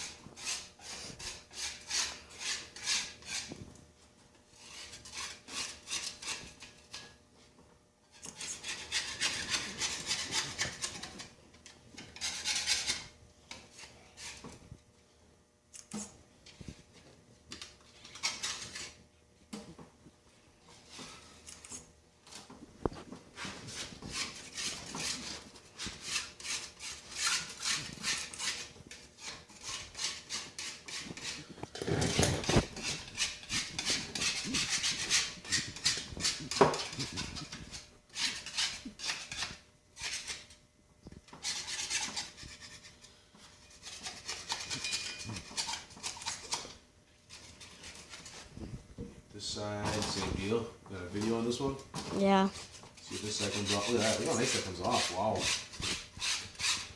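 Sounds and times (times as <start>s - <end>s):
scraping strokes on metal anvil: 12.0s - 13.1s, 23.4s - 40.5s, 41.3s - 46.6s.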